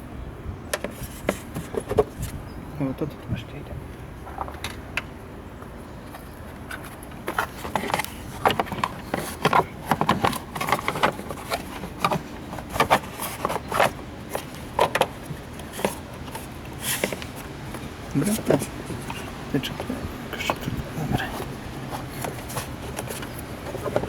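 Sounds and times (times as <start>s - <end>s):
plastic and metal parts clicking: 6.7s - 20.6s.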